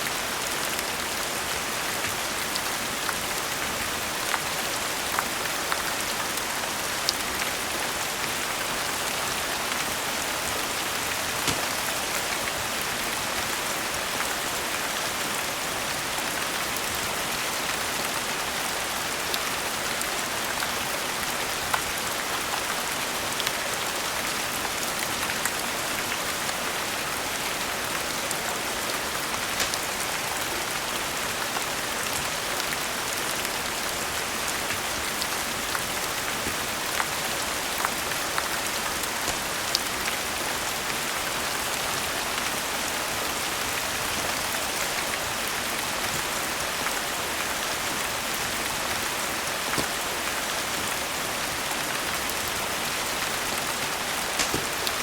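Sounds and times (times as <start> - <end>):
steady rain falling: 0.0 - 55.0
fire crackling and popping: 29.5 - 30.0, 54.3 - 55.0.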